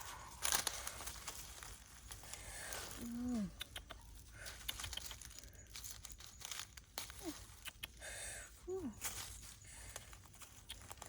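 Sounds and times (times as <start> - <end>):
leaves rustling and stems snapping: 0.0 - 8.0, 8.7 - 11.0
sharp clicks: 7.5 - 8.0.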